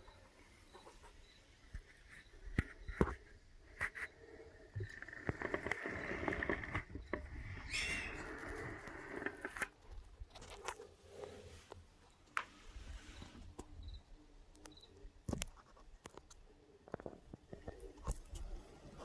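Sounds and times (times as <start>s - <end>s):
rustling and scraping: 0.0s - 13.8s.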